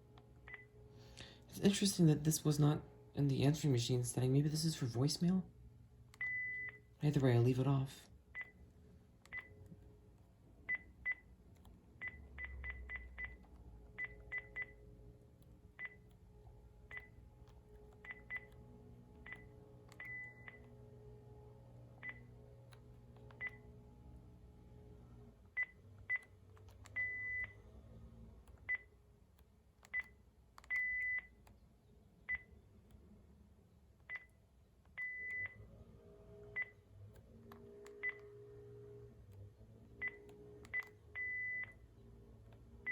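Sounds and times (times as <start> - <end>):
phone handset key beeps: 6.2 - 6.8, 29.8 - 31.4, 40.0 - 41.8.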